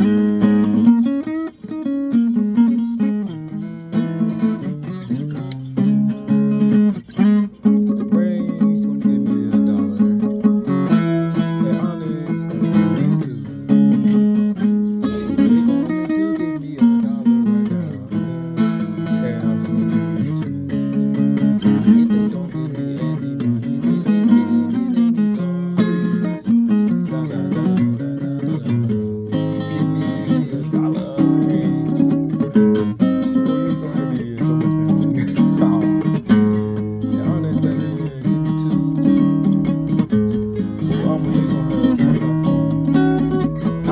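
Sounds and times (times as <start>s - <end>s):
acoustic guitar strumming: 0.0s - 43.9s.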